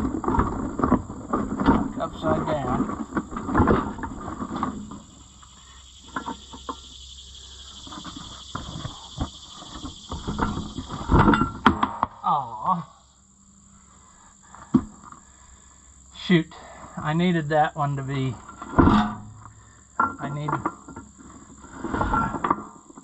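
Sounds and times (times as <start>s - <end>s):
insects chirring: 0.0s - 23.0s.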